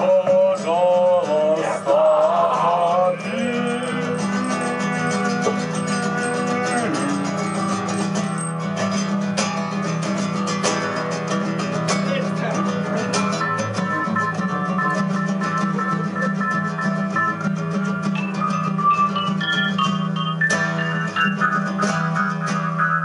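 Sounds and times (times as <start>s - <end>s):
person singing wavering: 0.0s - 8.5s
guitar playing: 0.0s - 23.0s.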